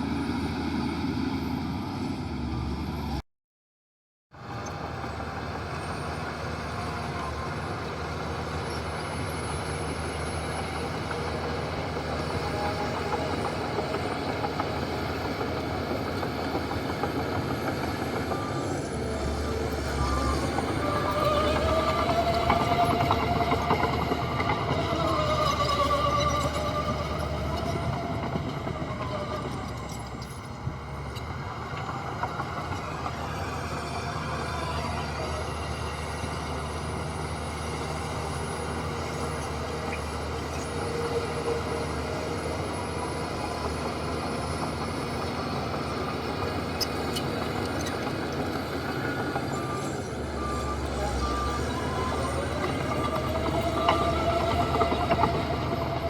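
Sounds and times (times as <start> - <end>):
heavy diesel machinery running: 4.4 - 56.0
reversing alarm beeping: 16.7 - 36.8, 48.1 - 56.0.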